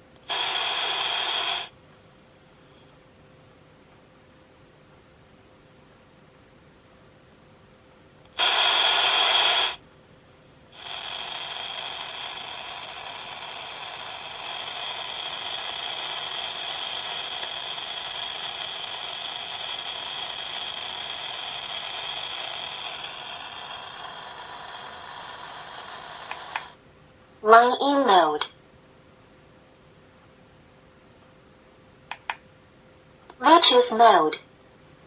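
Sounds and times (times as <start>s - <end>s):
radio static hiss: 0.0s - 1.8s, 8.3s - 9.8s, 10.7s - 26.8s, 33.3s - 34.5s.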